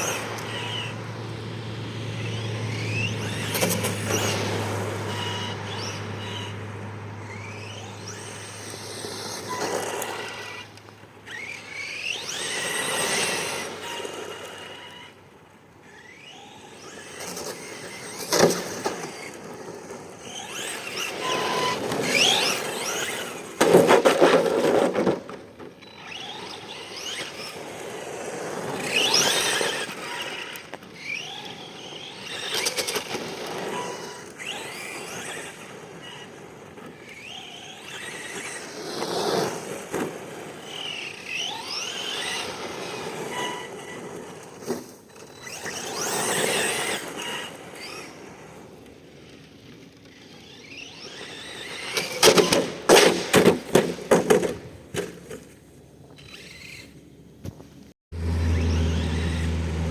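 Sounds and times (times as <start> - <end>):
scraping on pavement: 2.2 - 6.6, 7.2 - 15.2, 15.8 - 59.9
tyre squeal: 56.1 - 57.0
electric motor whining: 58.2 - 59.9.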